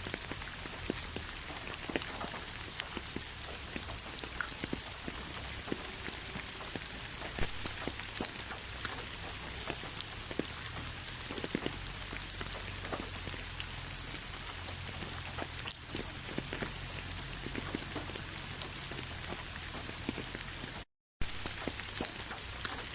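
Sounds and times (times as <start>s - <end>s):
steady rain: 0.0s - 22.9s.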